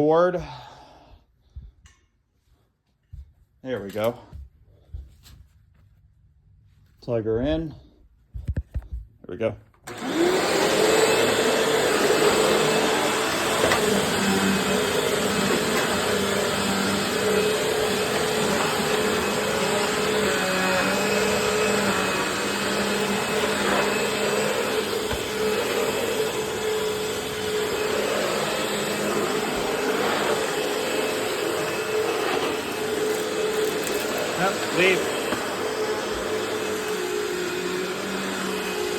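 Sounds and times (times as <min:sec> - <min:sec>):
vacuum cleaner motor humming: 0:09.8 - 0:38.9.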